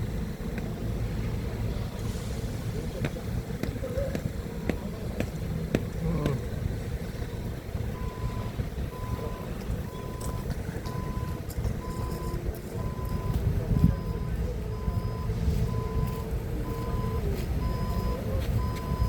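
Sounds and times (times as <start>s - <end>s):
forklift engine running: 0.0s - 19.0s
reversing alarm beeping: 8.0s - 19.0s.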